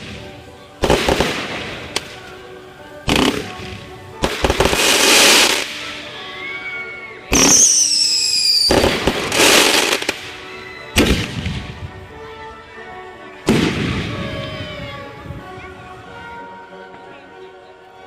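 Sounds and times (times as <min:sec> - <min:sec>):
firework bursts crackling: 0:00.0 - 0:06.1, 0:07.3 - 0:11.9, 0:13.5 - 0:15.4
background music: 0:00.0 - 0:18.0
whistling firework shell: 0:07.3 - 0:10.2.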